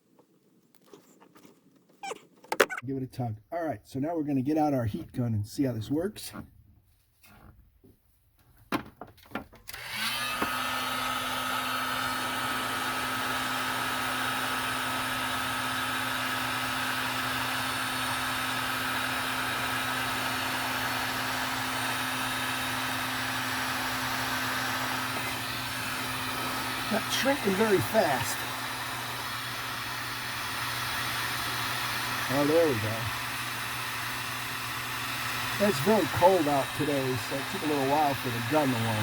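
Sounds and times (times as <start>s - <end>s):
heat gun fan whine: 9.7s - 39.0s.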